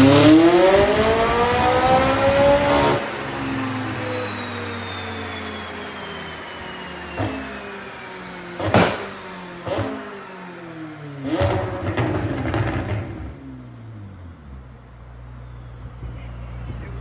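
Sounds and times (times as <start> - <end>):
car engine winding down: 0.0 - 17.0
exhaust pops and crackling: 8.6 - 10.0, 11.3 - 13.4.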